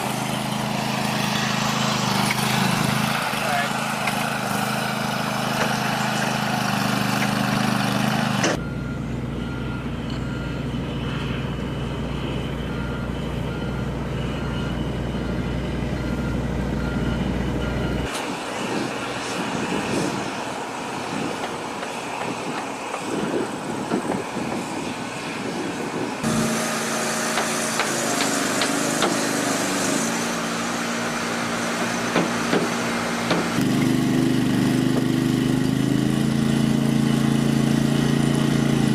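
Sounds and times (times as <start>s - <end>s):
diesel engines running: 0.0s - 38.9s
reversing alarm beeping: 8.6s - 18.1s.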